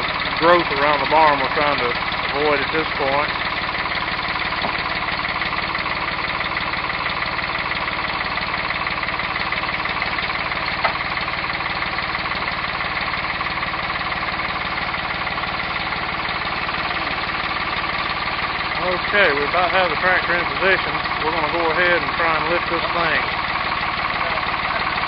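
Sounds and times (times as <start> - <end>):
tractor engine running: 0.0 - 25.0.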